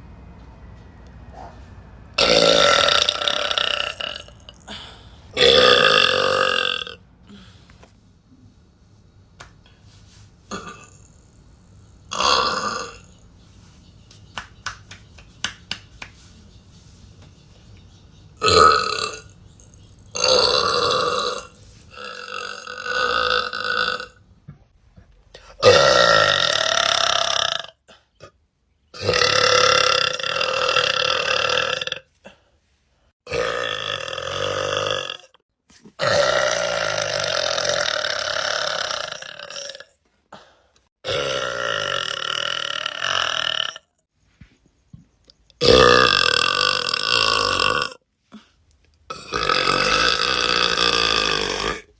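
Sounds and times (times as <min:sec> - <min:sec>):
woman burping: 0:02.2 - 0:07.0, 0:10.5 - 0:11.3, 0:25.5 - 0:28.4, 0:33.3 - 0:35.4, 0:36.0 - 0:39.9, 0:41.0 - 0:43.8, 0:49.1 - 0:51.9.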